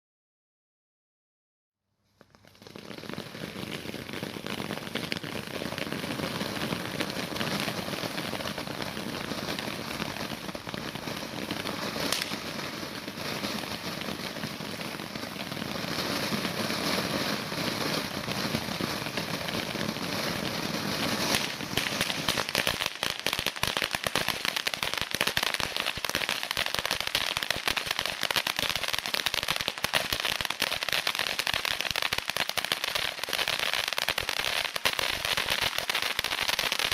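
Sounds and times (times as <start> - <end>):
fireworks crackling and banging: 2.0 - 36.9.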